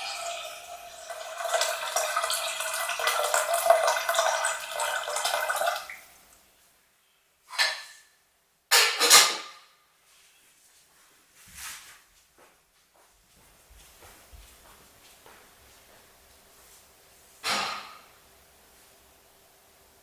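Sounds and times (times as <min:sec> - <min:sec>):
water pouring into vessel: 0:00.0 - 0:06.2
kitchenware knocks: 0:17.4 - 0:18.1.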